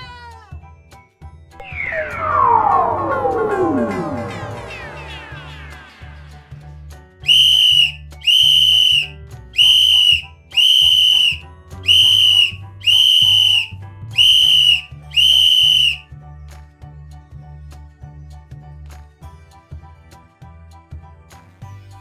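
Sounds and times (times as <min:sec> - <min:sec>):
shrill whistle blasts: 0:01.6 - 0:05.6, 0:07.2 - 0:16.1
background music with bass line: 0:01.6 - 0:22.0.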